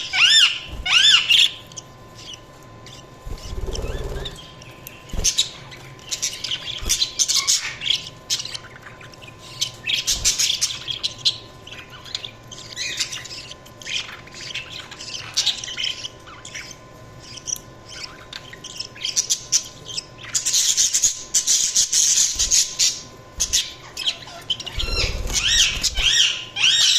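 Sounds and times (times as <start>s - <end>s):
budgerigars chirping: 0.0s - 26.9s
budgerigar squawks: 24.6s - 26.9s.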